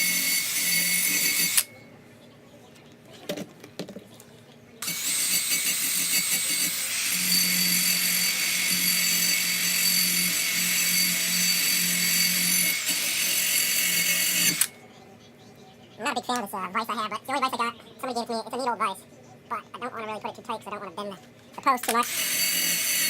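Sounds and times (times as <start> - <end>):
rotary power tool whining: 0.0 - 1.7, 4.8 - 14.8, 22.0 - 23.0.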